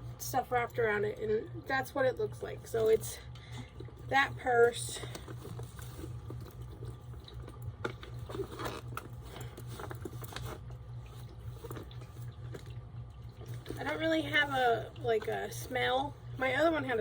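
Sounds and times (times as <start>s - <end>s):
steady low hum: 0.0s - 17.0s
wrapping rustling and crinkling: 4.0s - 16.1s.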